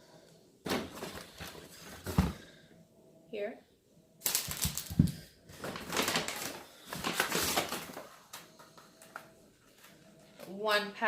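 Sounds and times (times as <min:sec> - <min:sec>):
plastic and paper bag crinkling: 0:00.7 - 0:02.3, 0:04.2 - 0:10.5.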